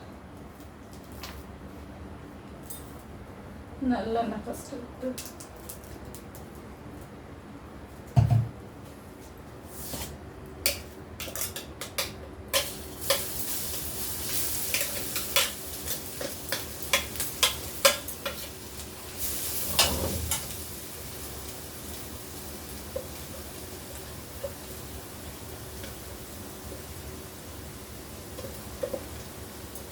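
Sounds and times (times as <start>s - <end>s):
oil frying sizzle: 10.7s - 29.9s
utensil stirring and tapping in pan: 14.3s - 18.6s, 22.9s - 26.9s, 28.3s - 29.4s.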